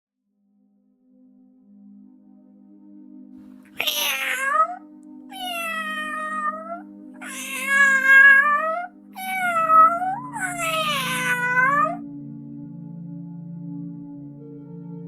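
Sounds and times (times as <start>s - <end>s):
cat meowing: 3.7s - 12.0s.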